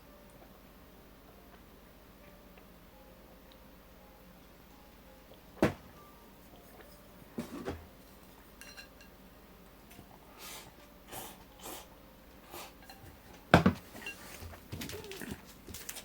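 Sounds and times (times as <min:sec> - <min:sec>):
soft eating noises: 0:06.4 - 0:13.3, 0:13.9 - 0:16.0
tableware knocking and clinking: 0:08.6 - 0:09.1.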